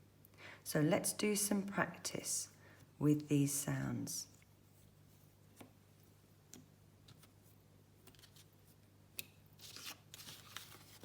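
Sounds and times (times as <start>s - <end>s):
papers rubbing and shuffling on table: 9.6s - 11.0s.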